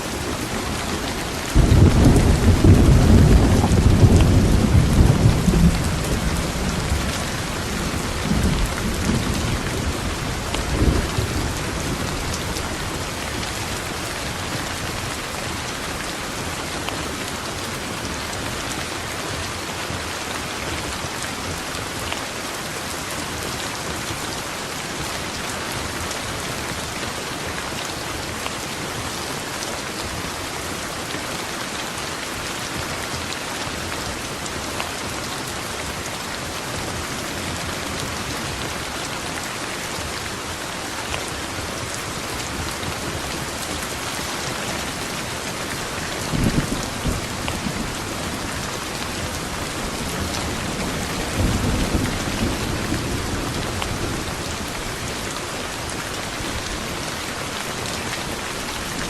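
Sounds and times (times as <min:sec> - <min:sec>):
low thunder rumbles: 0:00.0 - 0:15.1
rain hissing: 0:00.0 - 0:18.2.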